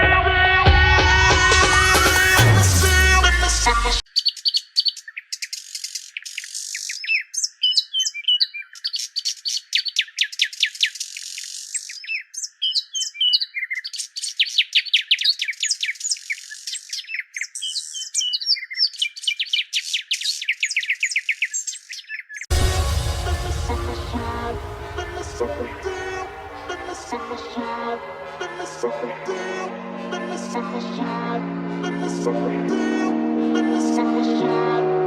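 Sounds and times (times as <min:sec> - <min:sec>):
bird song chirps and whistles: 0:04.1 - 0:22.5.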